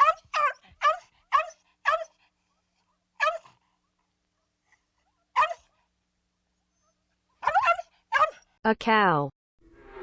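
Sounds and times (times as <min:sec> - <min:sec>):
dog barking: 0:00.0 - 0:02.2, 0:03.2 - 0:03.6, 0:05.4 - 0:05.8, 0:07.4 - 0:08.5.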